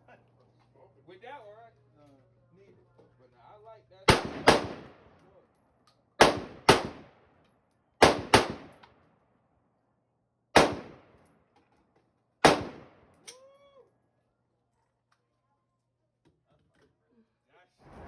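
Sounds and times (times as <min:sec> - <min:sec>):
gunshots with echo: 0:04.1 - 0:05.0, 0:06.2 - 0:07.0, 0:08.0 - 0:08.8, 0:10.6 - 0:11.0, 0:12.4 - 0:13.0.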